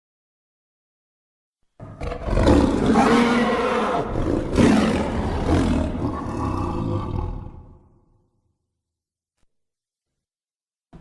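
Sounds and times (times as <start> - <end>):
monster roar: 1.8 - 8.0.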